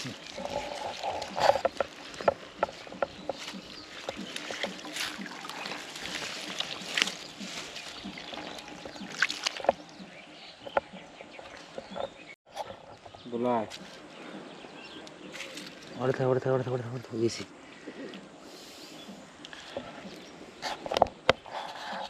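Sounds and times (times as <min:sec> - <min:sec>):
water splashing and sloshing: 0:00.0 - 0:22.0
sharp clicks and knocks: 0:01.2 - 0:05.1.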